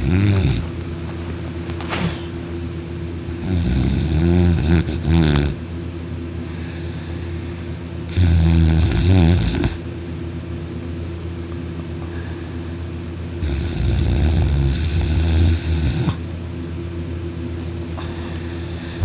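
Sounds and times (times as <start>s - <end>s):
person snoring loudly: 0.0s - 0.7s, 3.4s - 5.6s, 8.1s - 9.8s, 13.4s - 16.2s
steady low hum: 0.0s - 19.0s.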